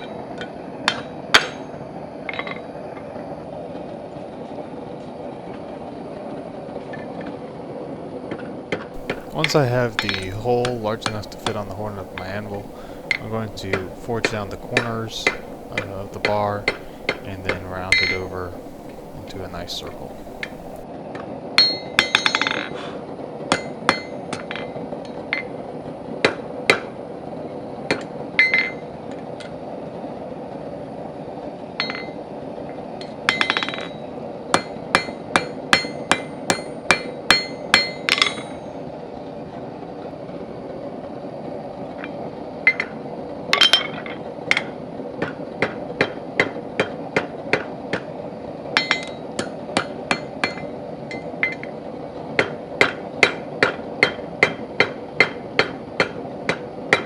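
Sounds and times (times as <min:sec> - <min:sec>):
hammer striking steel on anvil: 0:09.0 - 0:20.8
steady hum: 0:09.0 - 0:20.8.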